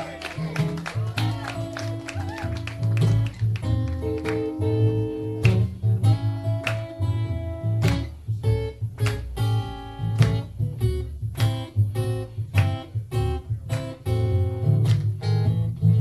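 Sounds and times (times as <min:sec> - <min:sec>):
acoustic guitar blues: 0:00.0 - 0:16.0.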